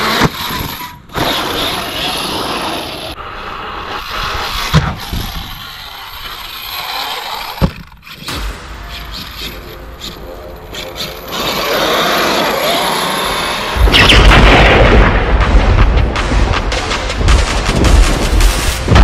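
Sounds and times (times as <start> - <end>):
rc truck motor and tyres: 0.0 - 14.0.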